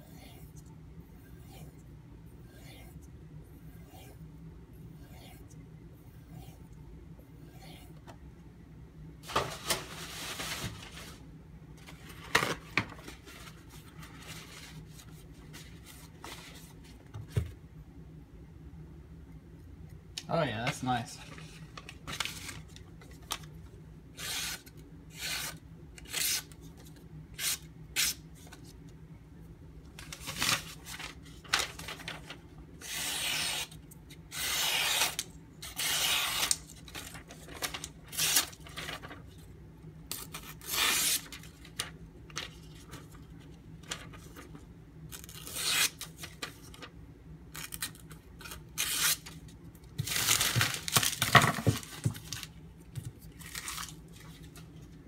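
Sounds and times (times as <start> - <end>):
knife blade scraping: 32.8 - 33.7, 34.3 - 36.6.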